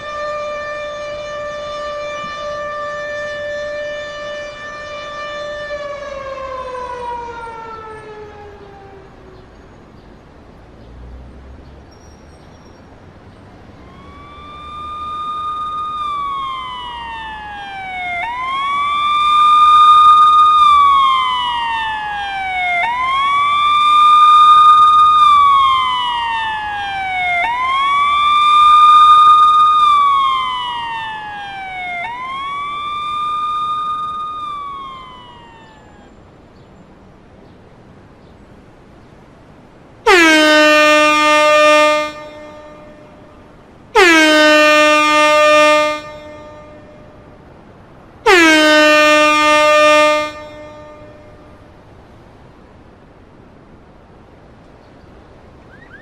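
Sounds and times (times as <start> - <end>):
police siren wailing: 0.0 - 9.6, 13.7 - 36.4, 40.0 - 51.8, 55.6 - 56.0.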